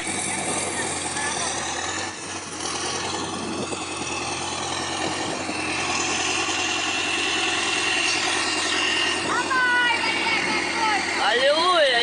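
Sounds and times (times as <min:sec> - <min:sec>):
heavy machine engine running: 0:00.0 - 0:12.0.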